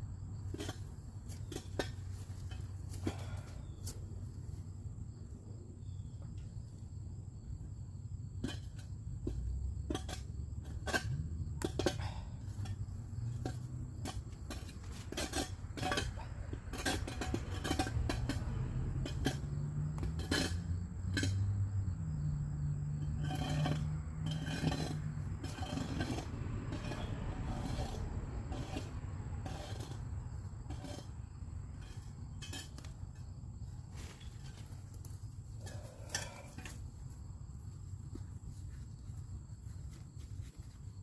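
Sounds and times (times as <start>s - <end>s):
low engine hum: 9.3s - 40.9s
hand tools clinking: 9.9s - 21.5s.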